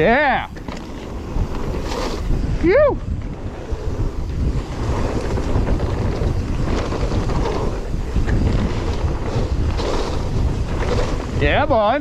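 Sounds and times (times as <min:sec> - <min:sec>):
bike rattles and knocks: 0:00.0 - 0:12.0
bike tyres rumbling over dirt: 0:00.0 - 0:12.0
wind buffeting microphone: 0:00.0 - 0:12.0.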